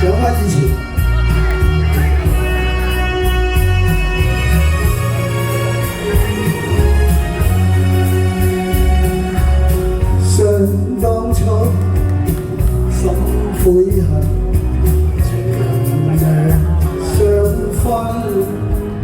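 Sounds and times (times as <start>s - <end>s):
bass guitar: 0.0s - 19.0s
drums playing a steady beat: 0.0s - 19.0s
keyboard: 0.0s - 19.0s
person singing: 10.1s - 19.0s.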